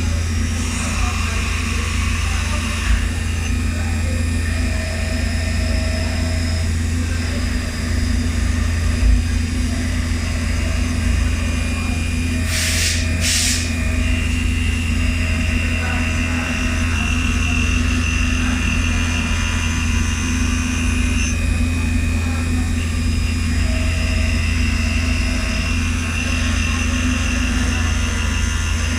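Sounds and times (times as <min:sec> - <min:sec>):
high steady whine: 0:00.0 - 0:28.9
milling machine hum: 0:00.0 - 0:28.9
short hisses: 0:12.5 - 0:13.7.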